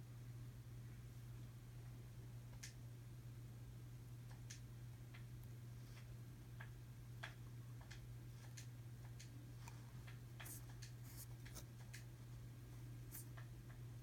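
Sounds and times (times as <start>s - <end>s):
steady low hum: 0.0s - 14.0s
small parts clicking and tapping: 6.0s - 12.1s.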